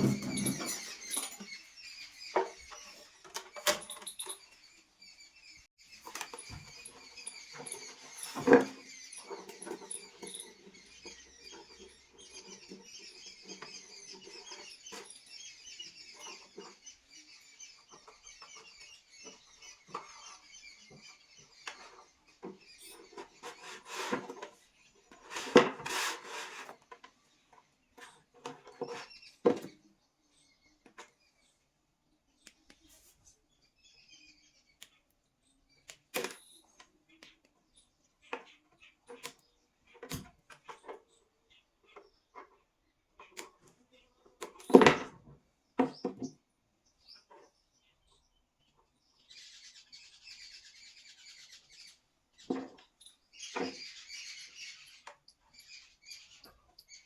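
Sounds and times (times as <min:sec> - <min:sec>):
small objects scratching and clicking: 0:22.6 - 0:27.0.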